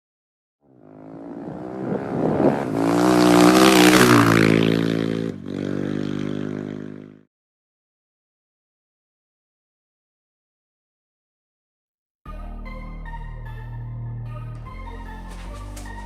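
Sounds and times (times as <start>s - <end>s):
motorcycle engine revving: 0.7s - 7.3s.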